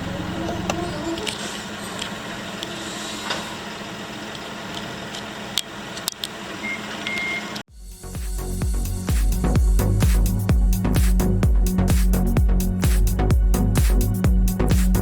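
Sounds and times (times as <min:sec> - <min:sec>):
car engine idling: 0:00.0 - 0:06.6
electronic dance music: 0:07.7 - 0:15.0.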